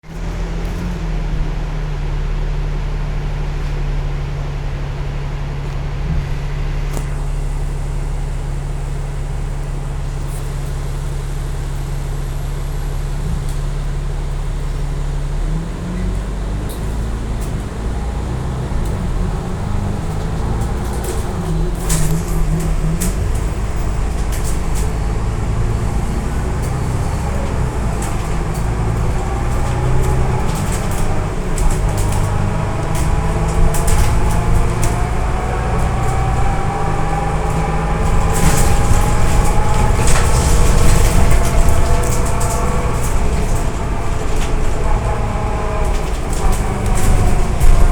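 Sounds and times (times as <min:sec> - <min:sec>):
bus engine running: 0:00.0 - 0:47.9
clicks and rattles: 0:16.2 - 0:47.9.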